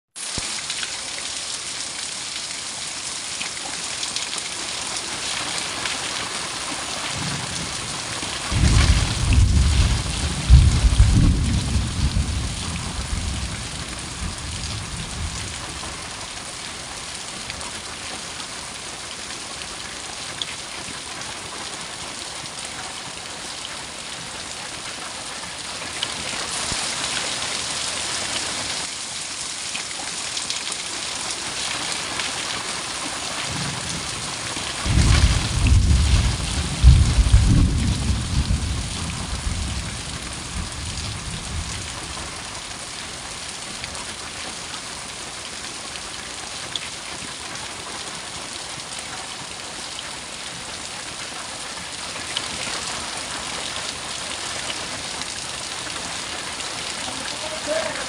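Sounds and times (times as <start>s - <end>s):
heavy rain falling: 0.2s - 58.0s
thunder rumbling: 7.2s - 15.8s, 33.5s - 42.0s.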